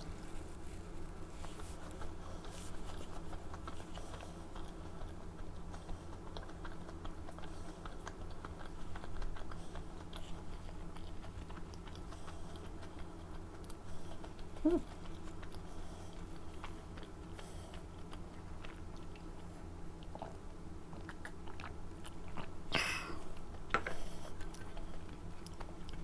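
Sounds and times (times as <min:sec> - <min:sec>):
low steady hum: 0:00.0 - 0:26.0
wet chewing mouth clicks: 0:01.4 - 0:22.6
throat sound: 0:14.6 - 0:14.9.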